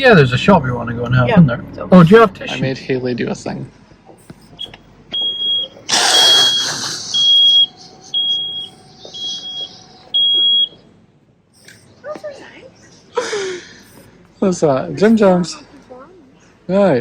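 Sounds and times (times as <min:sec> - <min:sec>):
high electronic beep: 0:04.2 - 0:10.8
loud burst of noise: 0:05.9 - 0:08.8.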